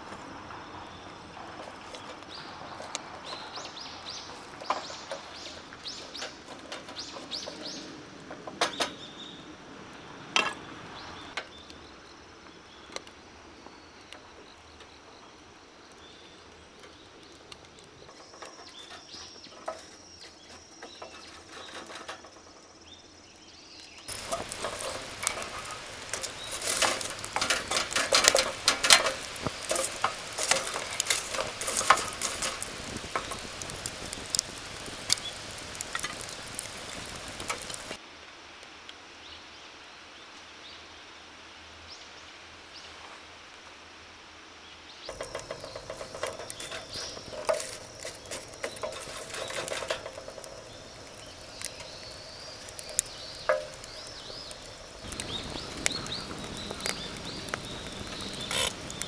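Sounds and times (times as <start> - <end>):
burning wood popping: 24.1 - 38.0, 45.1 - 59.0
wood fire crackling: 24.1 - 38.0, 45.1 - 59.0.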